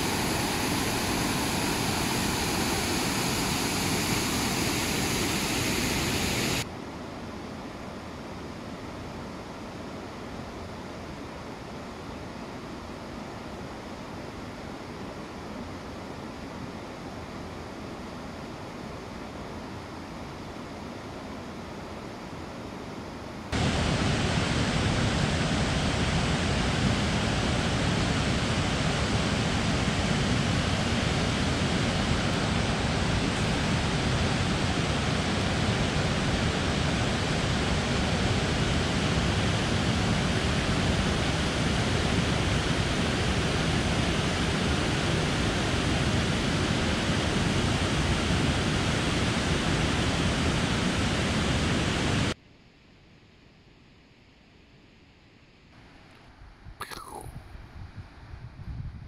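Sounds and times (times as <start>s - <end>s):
waterfall rushing water: 0.0s - 6.6s, 23.6s - 43.4s.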